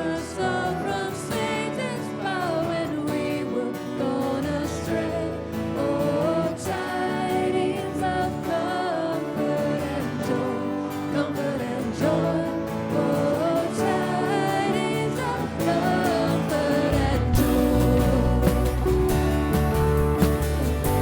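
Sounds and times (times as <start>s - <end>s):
worship song with band: 0.0s - 21.0s.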